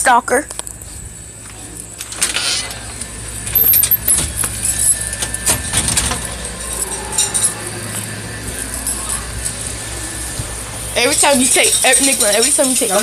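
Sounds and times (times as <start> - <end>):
steady low hum: 0.0 - 13.0
light metallic jingling: 3.6 - 5.4.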